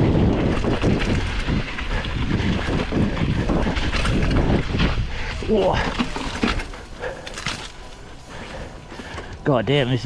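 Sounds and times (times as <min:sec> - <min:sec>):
mountain bike rattling over rocks: 0:00.0 - 0:10.0
wind buffeting microphone: 0:00.0 - 0:10.0.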